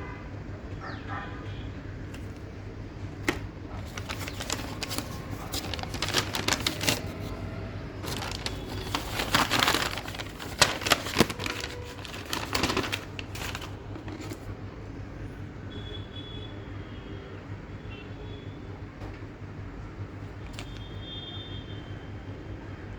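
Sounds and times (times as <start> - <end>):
low steady hum: 1.7 - 15.6
plastic packaging crinkling: 3.1 - 14.6, 20.4 - 20.9.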